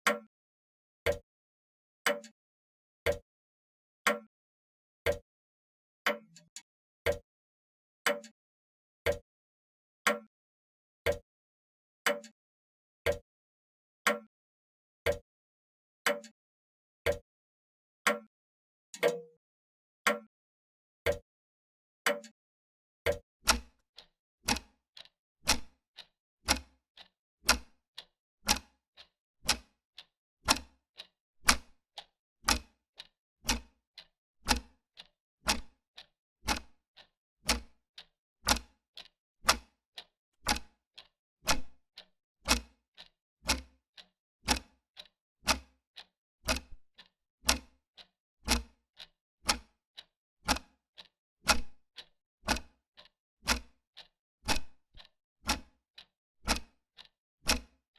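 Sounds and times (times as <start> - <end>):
mechanical clock ticking: 19.0 - 19.3, 22.1 - 22.3, 23.1 - 57.8.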